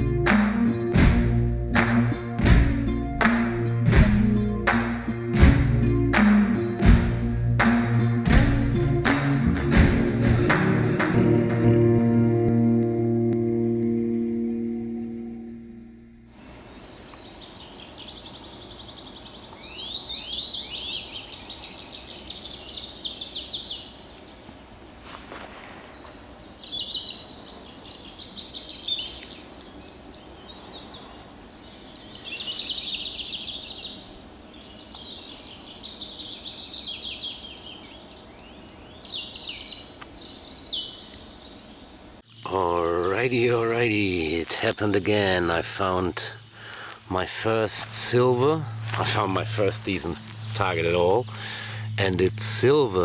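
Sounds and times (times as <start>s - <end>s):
low background noise: 0.0s - 53.0s
songbird singing trills: 14.4s - 24.4s, 25.8s - 53.0s.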